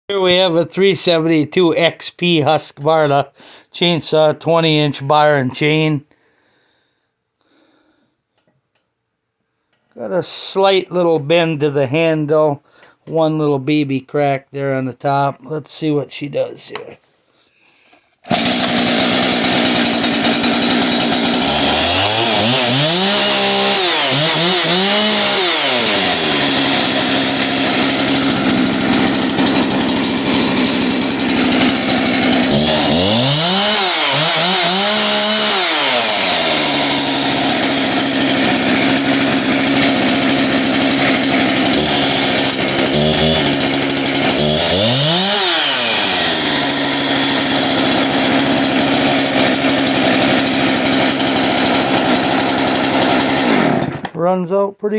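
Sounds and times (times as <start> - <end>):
chainsaw idling and revving: 18.3 - 54.2.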